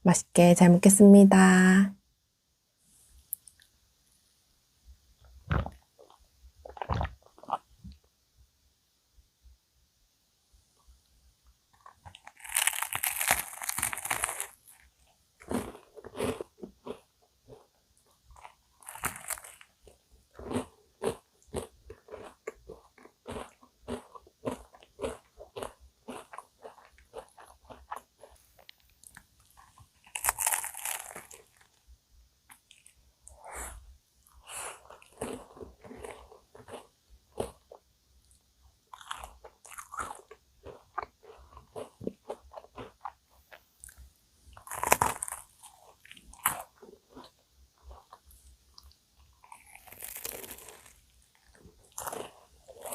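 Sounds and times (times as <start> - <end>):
crunchy bites into pastry: 11.8 - 17.6, 18.3 - 28.3, 29.1 - 31.8, 38.9 - 43.2, 44.6 - 48.2, 49.4 - 52.9
close-miked chewing: 11.8 - 31.8, 32.5 - 52.9.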